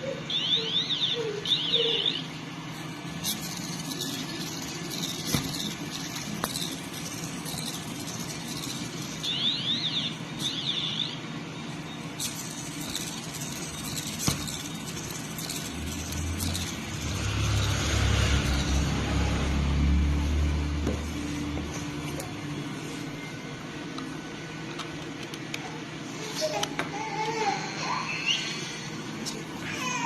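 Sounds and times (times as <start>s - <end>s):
electronic beeper sweeping chirps: 0.2s - 2.4s, 8.5s - 16.7s.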